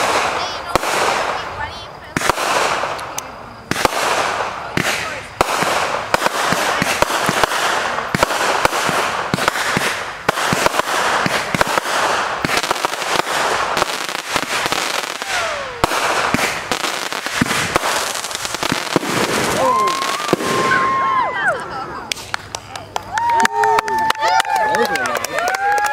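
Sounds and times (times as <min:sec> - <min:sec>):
fireworks popping and banging: 0:00.0 - 0:21.2, 0:21.8 - 0:25.9
constant hiss: 0:00.0 - 0:25.5
falling firework whistle: 0:14.2 - 0:21.6.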